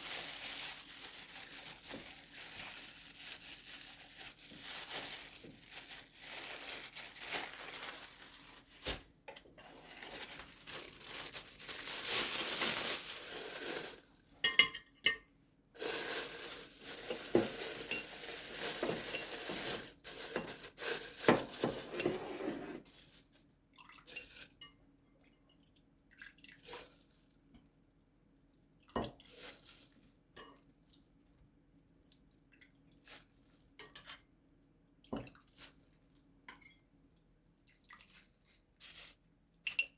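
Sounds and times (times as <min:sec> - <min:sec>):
dishes and utensils clinking: 0:14.4 - 0:15.3, 0:17.0 - 0:20.6, 0:21.2 - 0:22.9.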